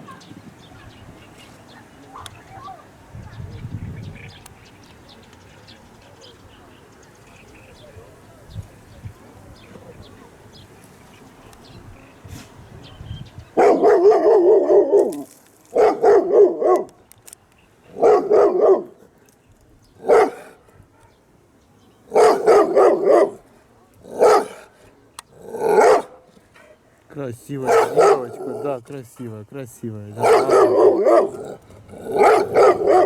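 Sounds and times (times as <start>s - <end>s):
dog barking with wavering pitch: 13.6s - 15.2s, 15.8s - 16.9s, 18.0s - 19.0s, 20.0s - 21.2s, 22.1s - 23.4s, 24.1s - 24.6s, 25.6s - 26.2s, 27.6s - 28.7s, 30.2s - 33.0s.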